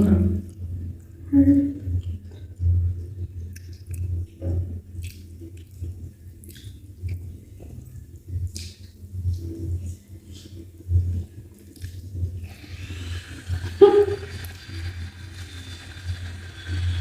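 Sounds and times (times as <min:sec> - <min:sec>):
person chewing food: 0:02.0 - 0:09.0
wet mouth clicks and smacks: 0:03.5 - 0:04.4, 0:05.0 - 0:07.4, 0:08.4 - 0:09.0.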